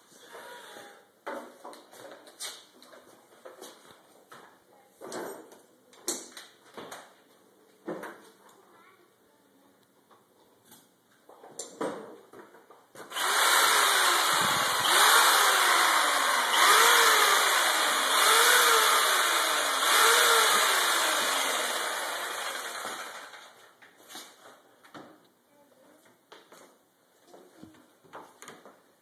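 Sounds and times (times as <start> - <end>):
power tool motor pulsing: 13.1 - 23.6.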